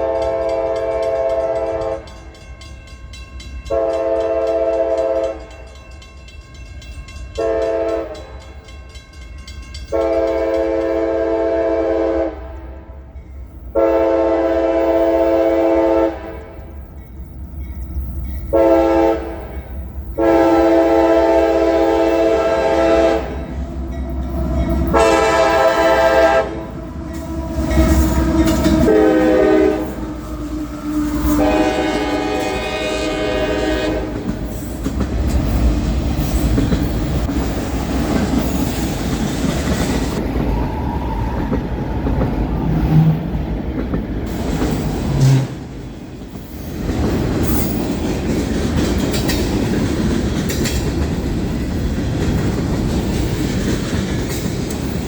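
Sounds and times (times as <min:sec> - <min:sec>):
locomotive air horn blasts: 0:00.0 - 0:02.2, 0:03.7 - 0:05.5, 0:07.4 - 0:08.5, 0:09.9 - 0:12.7, 0:13.8 - 0:16.7, 0:18.5 - 0:19.5, 0:20.2 - 0:34.5
train wheels clattering: 0:00.0 - 0:11.5, 0:16.5 - 0:55.0
locomotive rumbling: 0:00.0 - 0:55.0.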